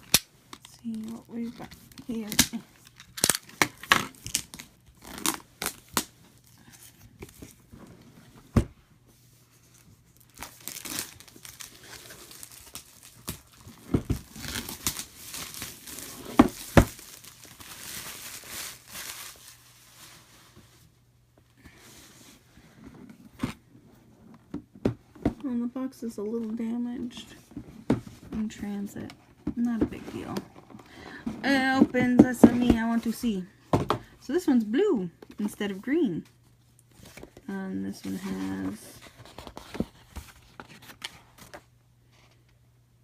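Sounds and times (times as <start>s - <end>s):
plastic wrap tearing and crinkling: 0.0s - 6.2s, 10.2s - 20.3s.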